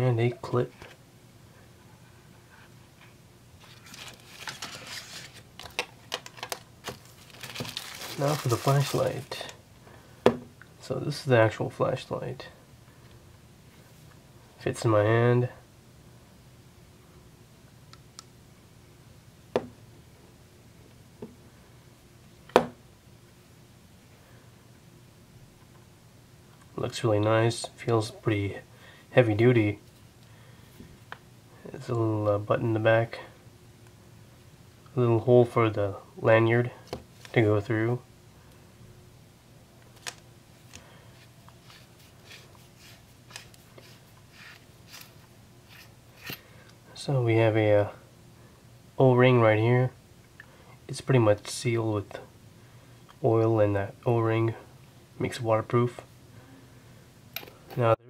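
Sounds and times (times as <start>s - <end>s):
faint scrapes and rustles: 1.8s - 5.5s, 41.0s - 46.5s.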